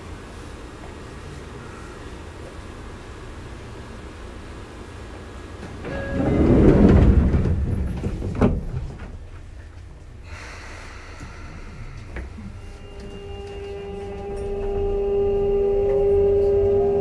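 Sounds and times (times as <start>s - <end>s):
train car hum: 0.0s - 17.0s
rush of air from train doors: 10.2s - 13.4s.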